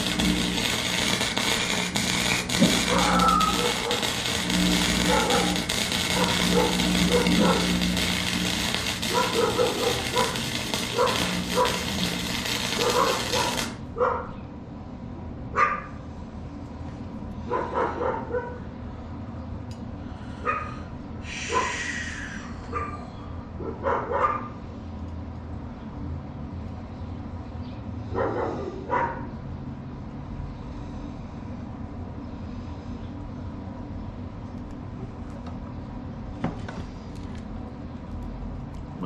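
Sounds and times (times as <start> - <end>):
welding arc crackling: 0.0 - 13.9
dog barking: 6.2 - 7.7, 9.1 - 11.8, 12.8 - 14.4, 15.6 - 16.0, 17.5 - 18.6, 20.4 - 20.8, 21.5 - 21.7, 22.7 - 23.0, 23.6 - 24.6, 28.1 - 29.3.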